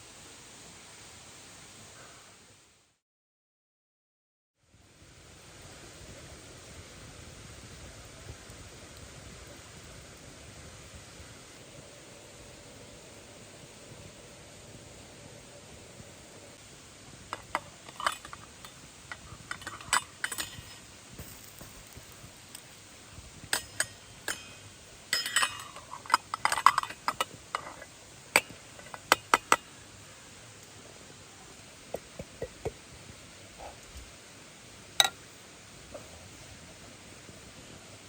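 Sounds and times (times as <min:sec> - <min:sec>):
metal cookware clinking: 0:19.1 - 0:20.8, 0:23.5 - 0:27.8.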